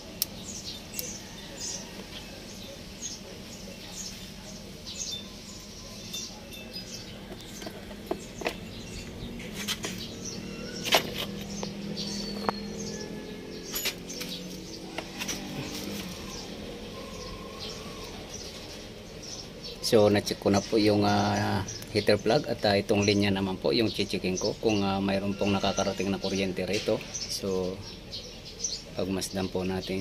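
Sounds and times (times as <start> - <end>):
small birds chirping: 0.0 - 30.0
hand tools clicking and tapping: 7.3 - 8.7, 10.7 - 12.7, 13.7 - 16.2.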